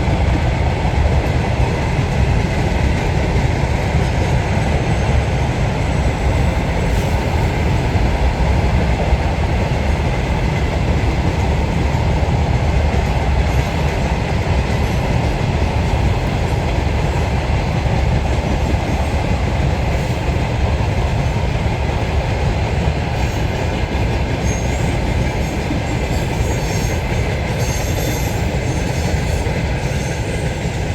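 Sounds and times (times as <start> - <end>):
train wheels rumbling on rail: 0.0 - 30.9
high wheel squeal: 24.4 - 30.5.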